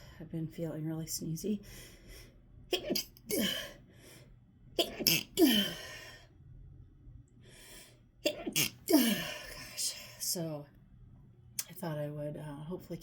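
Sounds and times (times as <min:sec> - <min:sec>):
person sneezing: 0:02.7 - 0:03.8, 0:04.8 - 0:06.0, 0:08.3 - 0:09.6
soft breath in: 0:07.4 - 0:08.1.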